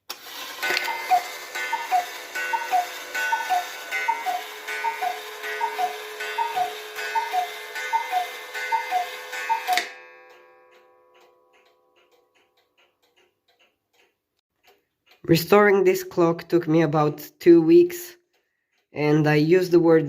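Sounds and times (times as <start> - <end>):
cuckoo clock calling: 0.1 - 15.6
ringing tone: 0.6 - 10.3
clock ticking: 0.6 - 20.0.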